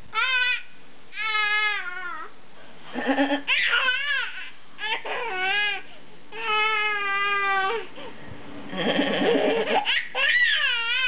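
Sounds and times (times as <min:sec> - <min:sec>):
toddler laughing and squealing: 0:03.4 - 0:05.8, 0:09.1 - 0:11.0.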